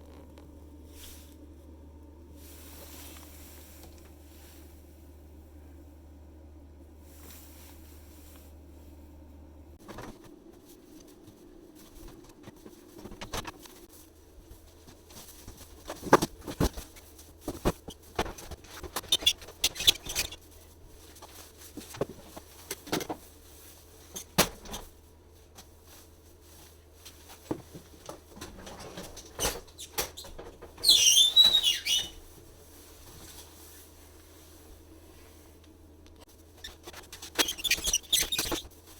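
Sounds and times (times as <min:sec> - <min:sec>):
loud squeaky rubbing: 0:29.8 - 0:32.2, 0:36.6 - 0:38.7.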